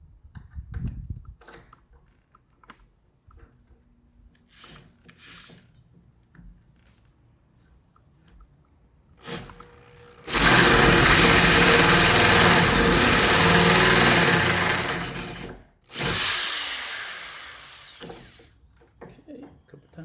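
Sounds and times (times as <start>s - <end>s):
power drill boring into wood: 9.2s - 18.5s.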